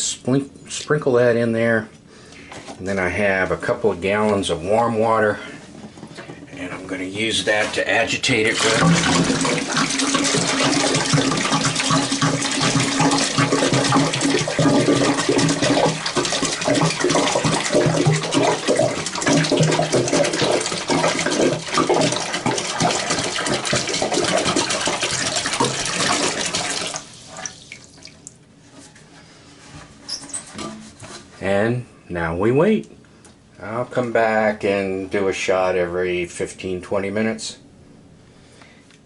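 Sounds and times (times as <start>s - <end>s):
water pouring and splashing: 8.4s - 28.4s.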